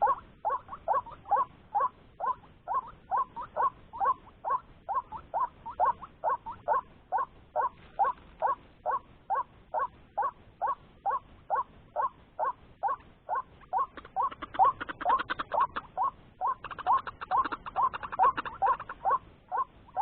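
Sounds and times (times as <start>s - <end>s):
bird croaking calls: 0.0s - 20.0s
harsh bird calls: 12.0s - 20.0s.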